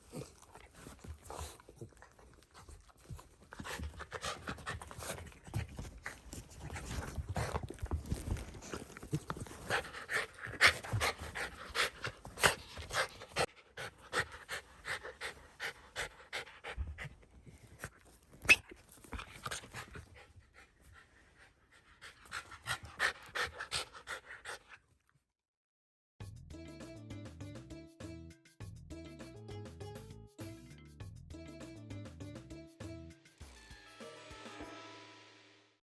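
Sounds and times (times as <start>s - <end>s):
dog panting: 0.0s - 18.3s, 19.0s - 24.9s.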